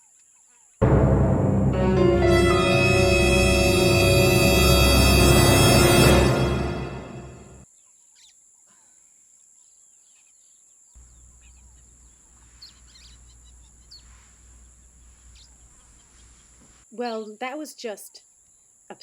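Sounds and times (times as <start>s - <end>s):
low rumble: 0.8s - 7.6s.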